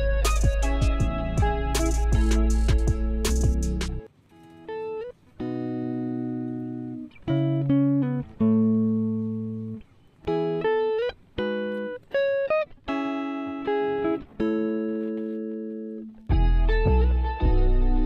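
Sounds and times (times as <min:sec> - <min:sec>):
plucked guitar-like melody: 0:00.0 - 0:18.0.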